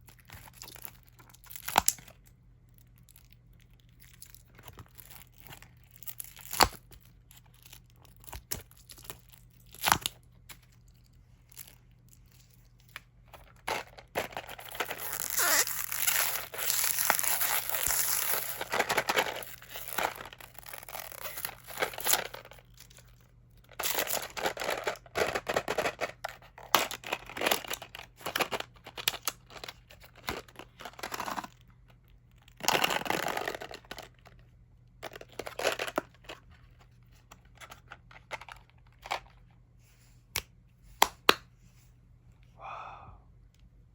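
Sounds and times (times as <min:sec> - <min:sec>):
plastic wrappers crinkling and tearing: 0:00.0 - 0:31.6.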